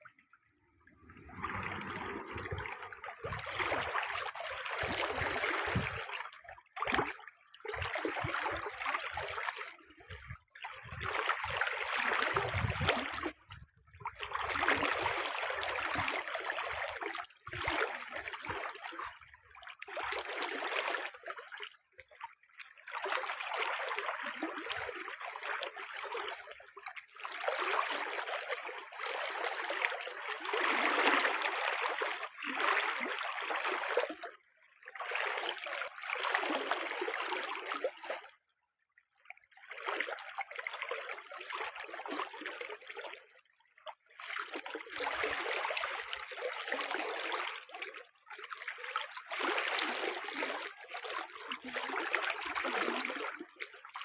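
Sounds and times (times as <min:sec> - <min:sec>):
water rushing: 0:01.1 - 0:04.0.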